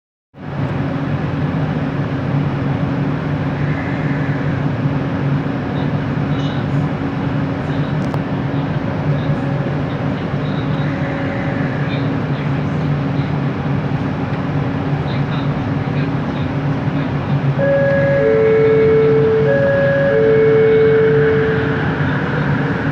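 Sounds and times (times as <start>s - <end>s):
metro car rumbling: 0.4s - 22.9s
low two-note motor hum: 17.6s - 22.9s.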